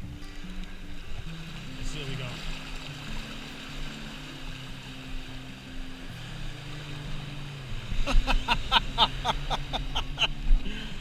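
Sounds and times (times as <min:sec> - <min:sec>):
soft background music: 0:00.0 - 0:11.0.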